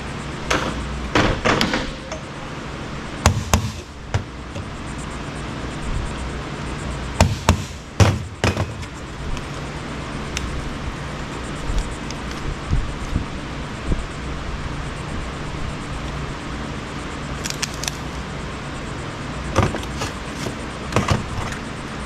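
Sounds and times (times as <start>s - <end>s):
steady low hum: 0.0s - 22.0s
hand tools and parts clattering: 7.2s - 9.0s, 19.6s - 21.6s.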